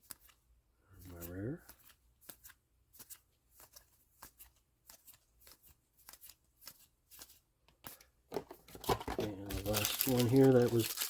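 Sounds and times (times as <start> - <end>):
cards flicking and sliding: 0.0 - 0.4, 1.0 - 8.1
card rustle: 1.0 - 11.0.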